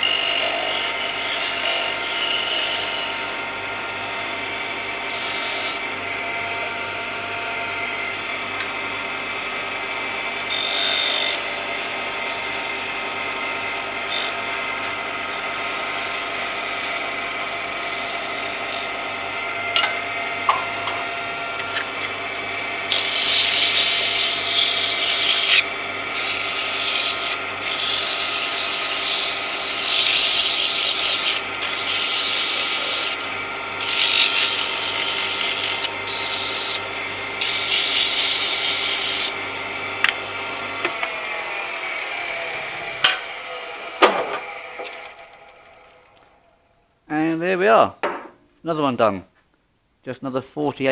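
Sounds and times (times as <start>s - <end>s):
lathe humming: 0.0s - 46.4s
tool scraping spinning wood: 22.9s - 39.4s, 43.6s - 46.2s.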